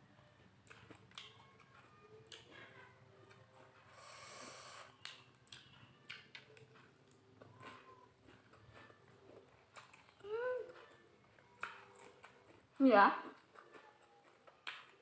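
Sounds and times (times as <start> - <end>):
chewing clicks and smacks: 0.6 - 3.9, 4.9 - 15.0
nasal breath: 3.9 - 5.0.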